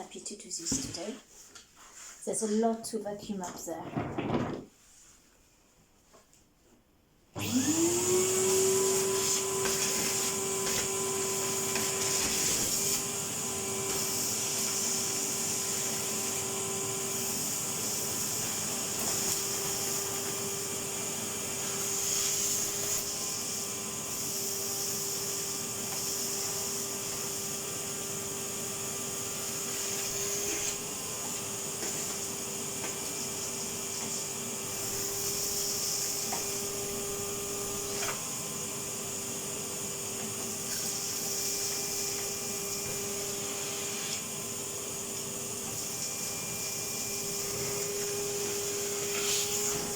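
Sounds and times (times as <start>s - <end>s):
vacuum cleaner motor whining: 7.4s - 49.9s.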